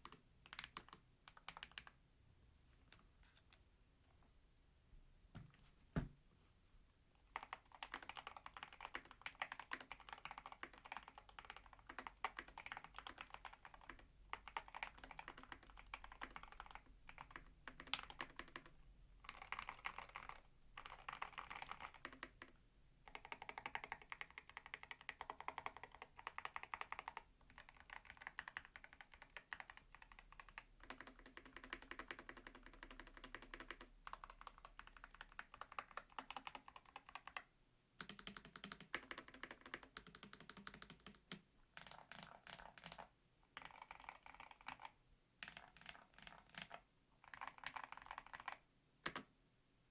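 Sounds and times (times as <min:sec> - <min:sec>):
fast typing on mechanical keyboard: 0:00.0 - 0:02.0, 0:07.3 - 0:49.2.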